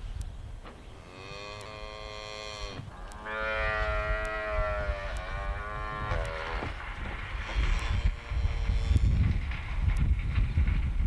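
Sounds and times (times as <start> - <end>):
cattle mooing: 1.0 - 6.8, 7.4 - 9.2.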